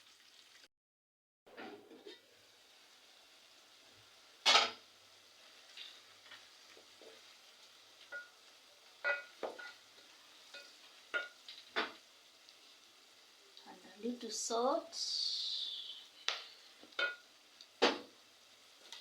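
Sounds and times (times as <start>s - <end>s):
vegetables sizzling: 0.0s - 0.7s, 1.7s - 19.0s.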